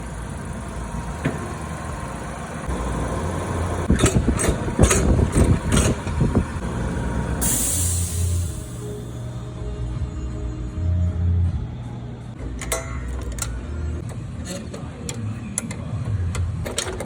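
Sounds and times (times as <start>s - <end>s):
lawn mower engine running: 0.0s - 7.4s
burst of hiss: 7.4s - 9.0s.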